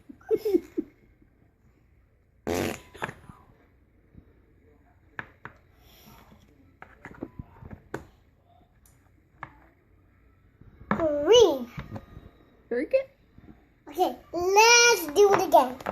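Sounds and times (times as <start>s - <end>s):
toy fart noise: 2.4s - 3.2s.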